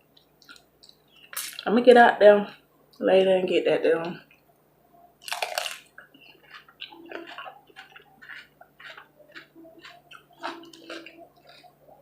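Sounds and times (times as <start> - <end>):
wet chewing and smacking: 0.2 - 1.7, 5.2 - 12.0.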